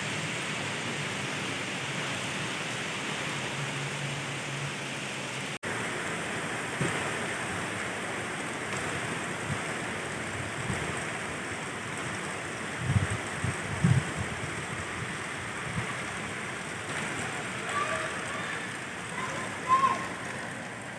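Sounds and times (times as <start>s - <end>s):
heavy rain falling: 0.0s - 20.9s.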